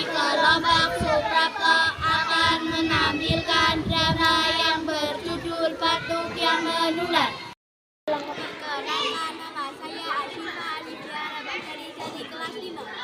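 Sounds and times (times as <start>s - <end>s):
children singing: 0.0s - 7.5s.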